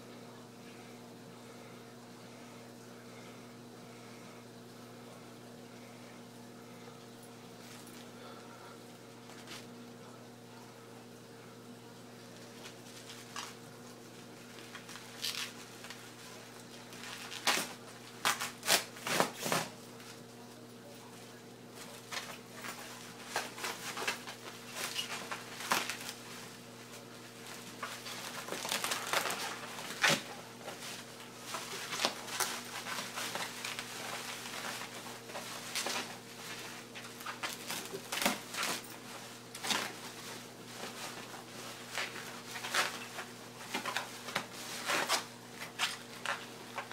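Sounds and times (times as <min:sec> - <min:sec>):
faint low hum: 0:00.0 - 0:46.9
packing material crinkling: 0:12.4 - 0:20.2, 0:21.8 - 0:46.9.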